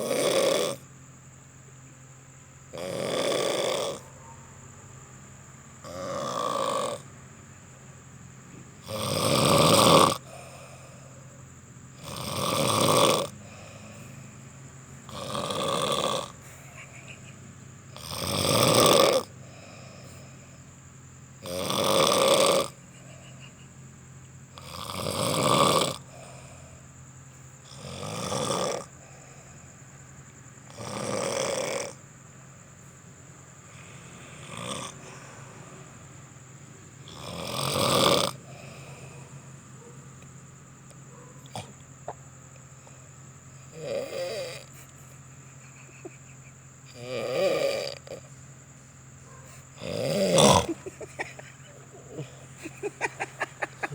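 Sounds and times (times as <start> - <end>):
person snoring loudly: 0.0 - 0.9, 2.7 - 4.0, 5.8 - 7.1, 8.8 - 11.0, 12.0 - 14.0, 15.1 - 17.1, 17.9 - 20.0, 21.4 - 23.2, 24.6 - 26.5, 27.7 - 29.0, 30.7 - 32.0, 33.7 - 35.5, 37.0 - 39.1, 43.7 - 44.8, 46.9 - 48.3, 49.7 - 53.9.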